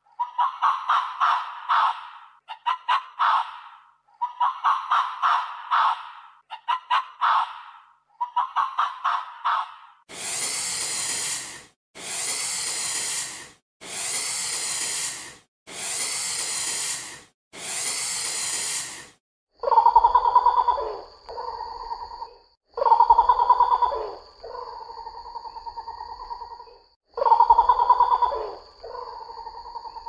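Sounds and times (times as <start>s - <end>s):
animal hissing: 10.1s - 19.2s
loud pitched animal call: 19.6s - 25.5s, 27.2s - 30.0s.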